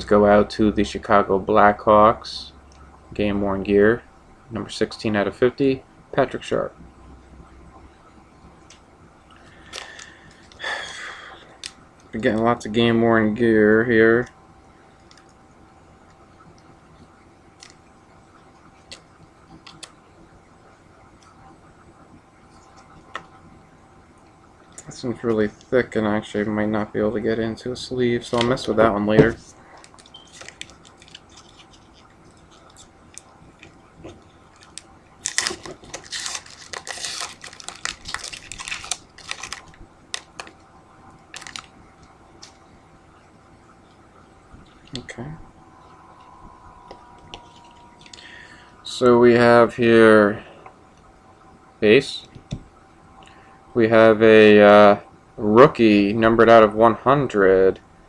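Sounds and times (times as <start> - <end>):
faint background hiss: 0.0 - 58.0
foil wrapper tearing and crinkling: 29.8 - 32.9, 34.6 - 40.6, 41.3 - 41.7.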